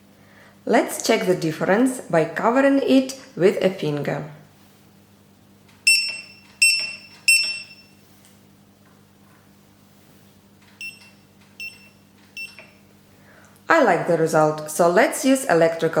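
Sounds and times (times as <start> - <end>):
high buzzer beeps: 5.9 - 8.0, 10.8 - 12.8.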